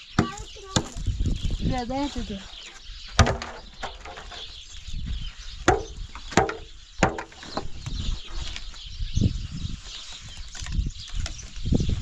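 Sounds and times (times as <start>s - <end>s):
sharp knocks with ringing: 5.6s - 7.7s.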